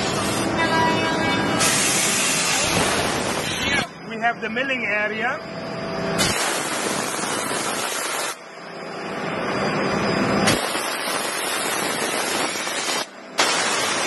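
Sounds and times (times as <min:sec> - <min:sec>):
milling machine rushing hiss: 0:00.0 - 0:00.6, 0:01.5 - 0:03.9, 0:06.2 - 0:08.4, 0:10.4 - 0:14.0.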